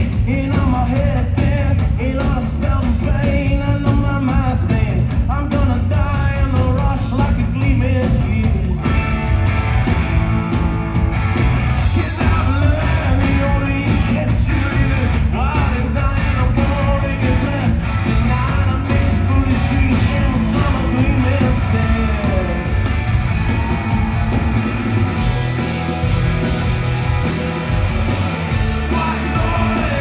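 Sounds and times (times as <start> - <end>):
bass guitar: 0.0 - 30.0
drums: 0.0 - 30.0
electric guitars: 8.2 - 30.0
person singing: 28.6 - 30.0.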